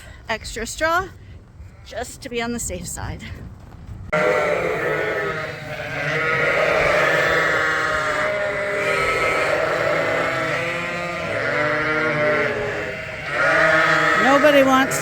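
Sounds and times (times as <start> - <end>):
sheep and lambs bleating: 4.1 - 15.0.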